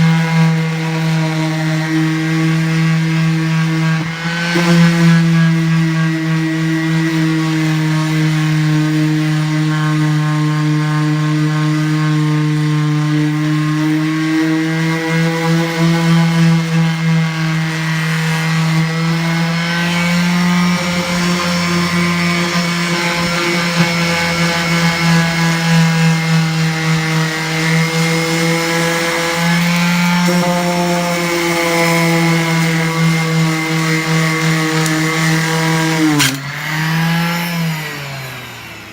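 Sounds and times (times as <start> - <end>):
power tool motor running: 0.0 - 38.9.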